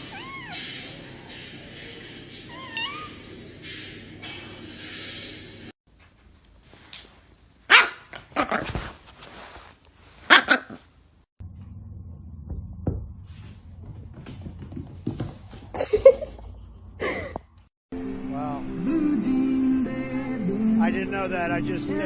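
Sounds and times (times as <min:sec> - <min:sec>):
dog barking: 0:07.7 - 0:08.7, 0:10.3 - 0:10.8.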